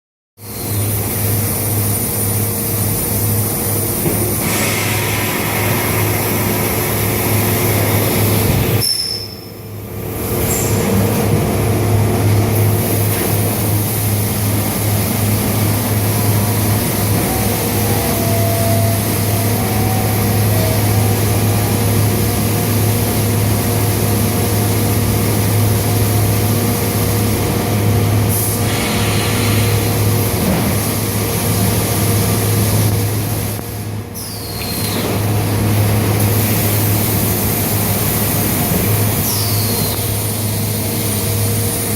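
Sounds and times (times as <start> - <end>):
hiss of air: 28.2 - 31.6.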